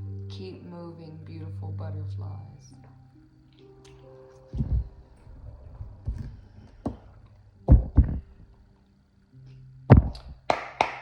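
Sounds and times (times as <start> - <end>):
dull thumps and knocks: 4.6 - 5.0, 5.8 - 8.4, 9.9 - 10.3.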